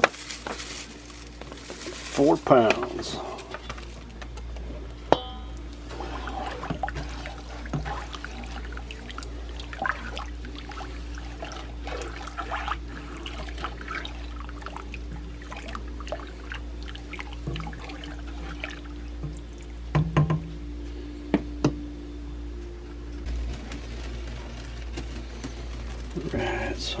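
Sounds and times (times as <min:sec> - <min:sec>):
liquid sloshing and trickling: 0:00.0 - 0:20.3
steady hum: 0:00.0 - 0:27.0.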